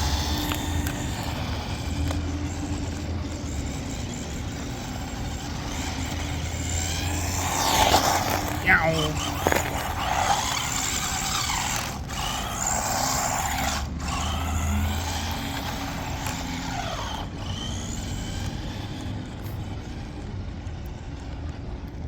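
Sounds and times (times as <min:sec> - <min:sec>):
toy truck motor whining: 0:00.0 - 0:22.0.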